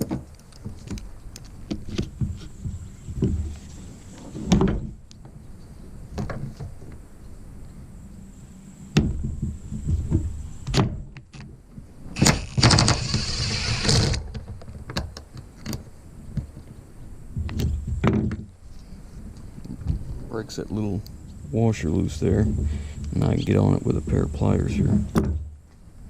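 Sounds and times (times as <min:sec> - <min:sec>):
harsh rasping burst: 0:12.2 - 0:14.3.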